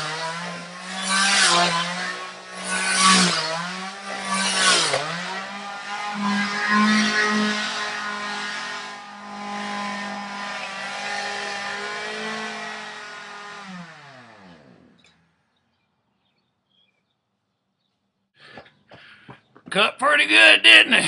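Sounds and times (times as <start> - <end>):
chainsaw running and winding down: 0.0 - 15.6.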